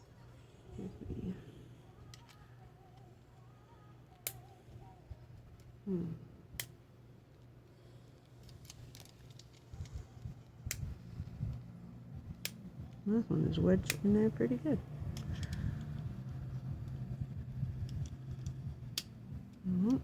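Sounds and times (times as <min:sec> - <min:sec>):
tweezers and plastic parts clicking: 0:02.0 - 0:03.1, 0:08.2 - 0:11.6, 0:13.8 - 0:20.0.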